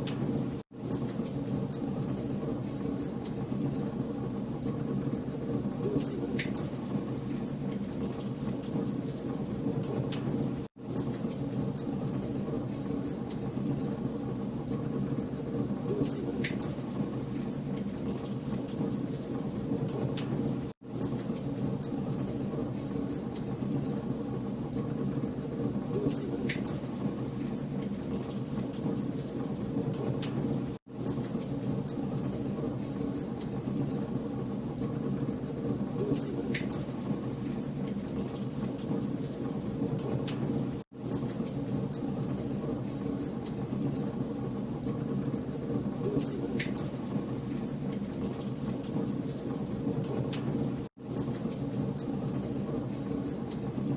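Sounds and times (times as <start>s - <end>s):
fire rumbling: 0.1s - 53.9s
fire crackling and popping: 34.7s - 44.1s, 44.8s - 53.8s.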